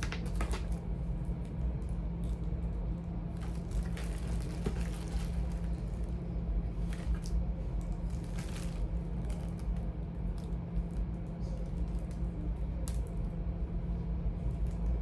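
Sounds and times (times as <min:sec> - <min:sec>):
steady low hum: 0:00.0 - 0:15.0
plastic items rustling and knocking: 0:03.4 - 0:05.8.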